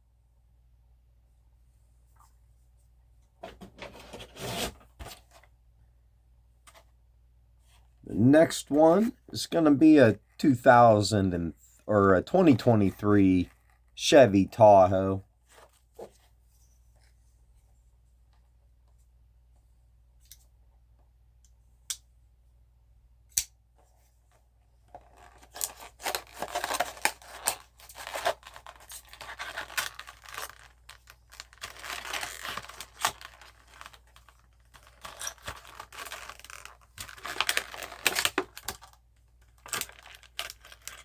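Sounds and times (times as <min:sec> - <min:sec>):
package tearing and crinkling: 0:25.3 - 0:41.0.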